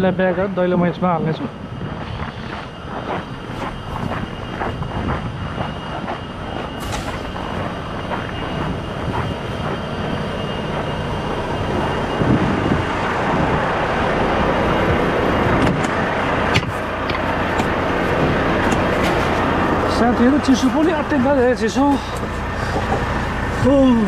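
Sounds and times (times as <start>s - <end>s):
broad rushing noise: 1.6s - 24.0s
diesel truck engine idling: 3.3s - 5.3s, 6.0s - 24.0s.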